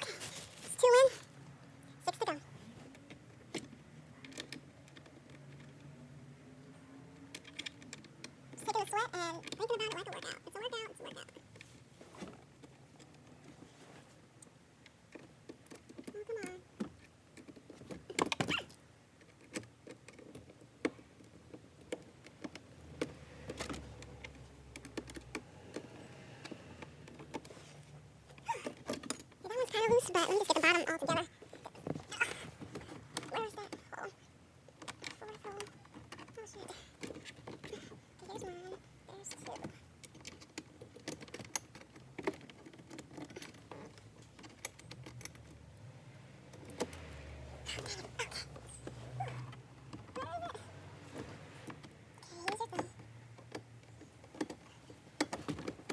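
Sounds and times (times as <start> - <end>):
plastic trim clicks and rattles: 7.1 - 11.7, 34.5 - 45.8.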